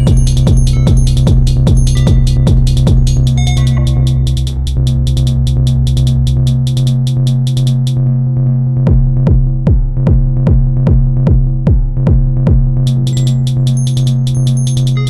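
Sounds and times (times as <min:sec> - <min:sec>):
kick drum with falling pitch: 0:00.0 - 0:07.9, 0:08.9 - 0:13.0
ticking hi-hats: 0:00.0 - 0:08.0, 0:12.9 - 0:15.0
droning bass tone: 0:00.0 - 0:15.0.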